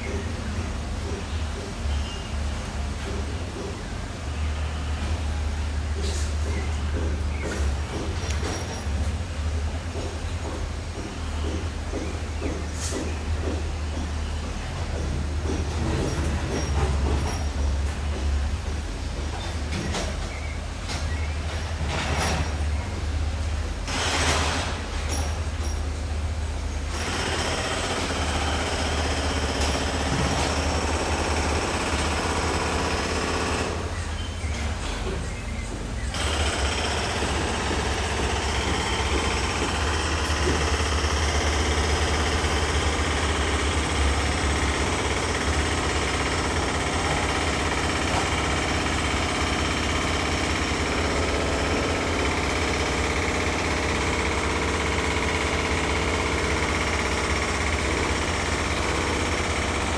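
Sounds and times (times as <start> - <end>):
rapid hammering: 36.1 - 59.9.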